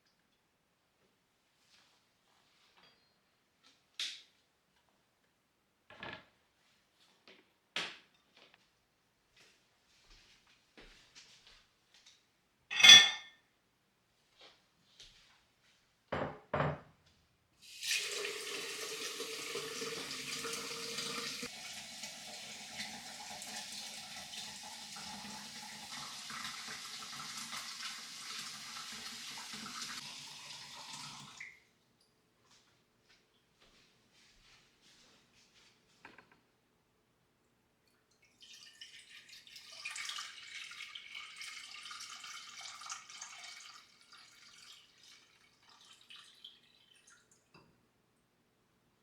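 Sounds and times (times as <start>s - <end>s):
tap water running into sink: 17.6s - 31.6s, 38.4s - 47.2s.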